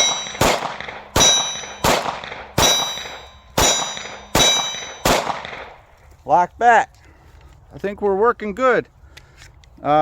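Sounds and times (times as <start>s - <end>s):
pistol shots: 0.0s - 5.8s
short metallic ring: 1.2s - 1.9s, 2.6s - 5.1s.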